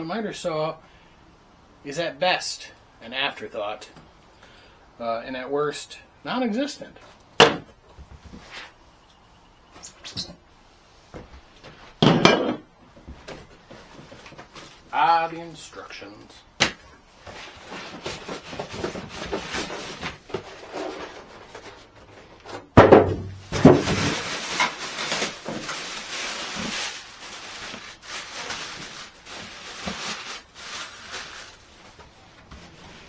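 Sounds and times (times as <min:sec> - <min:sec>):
packaging rustling: 0:17.2 - 0:22.4, 0:23.4 - 0:33.0
loud knocks: 0:22.8 - 0:23.9.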